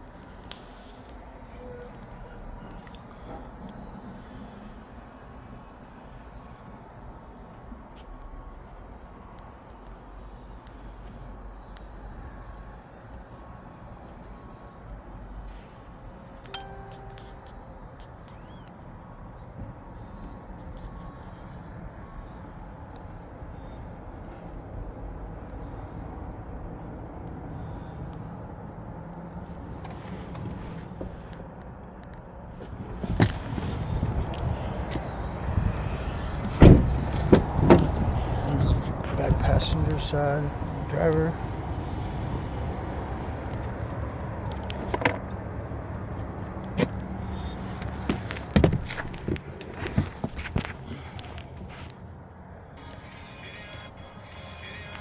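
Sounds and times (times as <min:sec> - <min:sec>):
car door knocks and clicks: 0:48.1 - 0:50.7.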